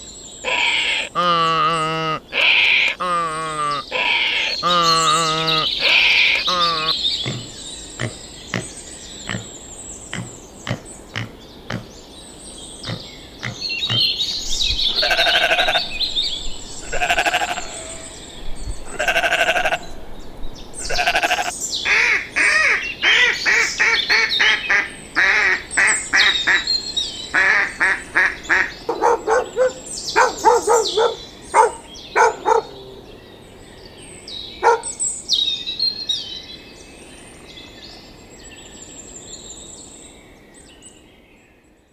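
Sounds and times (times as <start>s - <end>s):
birds chirping: 0.0s - 41.4s
livestock bleating: 0.5s - 7.4s, 14.9s - 15.9s, 16.8s - 18.1s, 18.9s - 19.9s, 20.8s - 21.5s.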